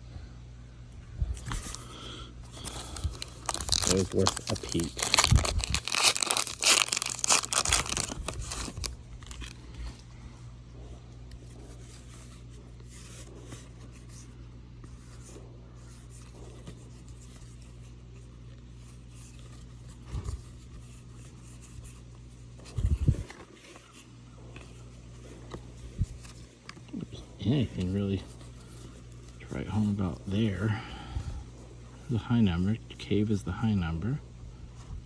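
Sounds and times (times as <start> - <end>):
wrapper tearing and crinkling: 2.5 - 9.7.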